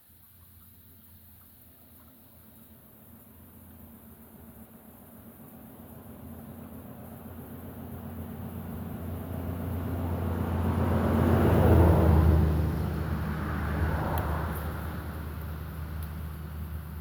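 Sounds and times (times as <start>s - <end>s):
vehicle passing by: 8.0s - 17.0s.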